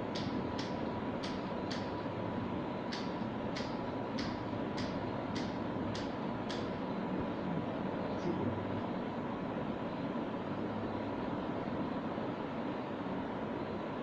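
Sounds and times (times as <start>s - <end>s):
sharp light ticks: 0.1s - 1.9s, 2.9s - 6.8s.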